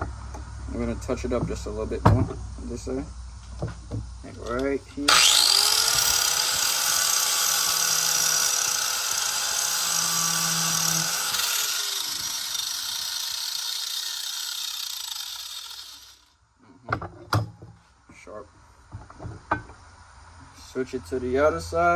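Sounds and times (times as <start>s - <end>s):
angle grinder grinding metal: 4.5s - 16.3s.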